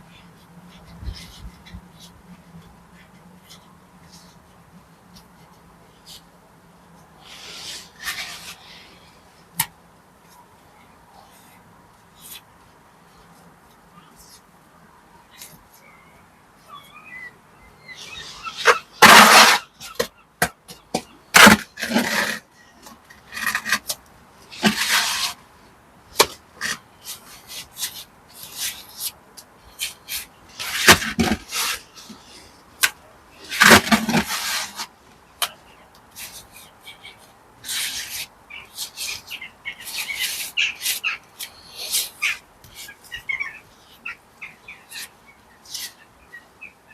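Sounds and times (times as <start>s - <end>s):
hand tool scraping masonry: 7.3s - 8.6s, 18.3s - 20.1s, 21.4s - 22.4s, 23.2s - 24.0s, 24.6s - 25.4s, 30.1s - 32.1s, 32.8s - 34.9s.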